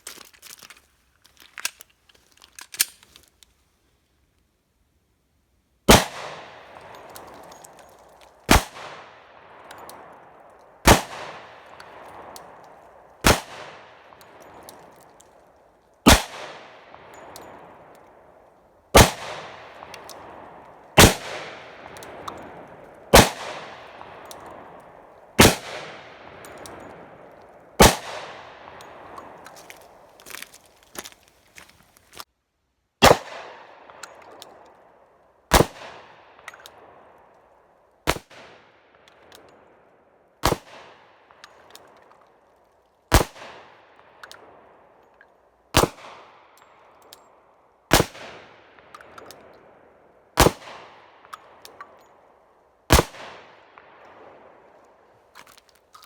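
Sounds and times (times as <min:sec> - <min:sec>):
pistol shots with echo: 0:05.9 - 0:07.8, 0:08.5 - 0:15.0, 0:16.0 - 0:18.0, 0:19.0 - 0:29.5, 0:33.0 - 0:34.3, 0:43.1 - 0:44.6, 0:45.7 - 0:46.5, 0:47.9 - 0:52.2, 0:52.9 - 0:54.7.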